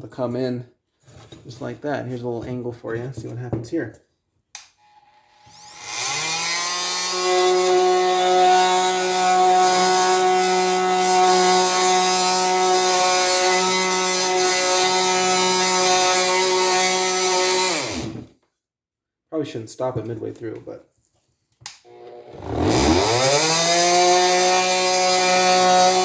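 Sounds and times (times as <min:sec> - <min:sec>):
oscillating multi-tool cutting wood: 0:05.3 - 0:18.3, 0:21.9 - 0:26.0.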